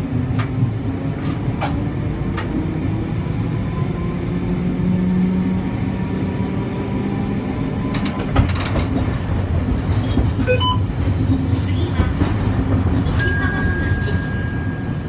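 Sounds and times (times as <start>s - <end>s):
streetcar rumbling: 0.0s - 15.0s
rattle of clicks: 1.2s - 2.6s, 8.0s - 9.1s
high ringing tone: 13.2s - 15.0s.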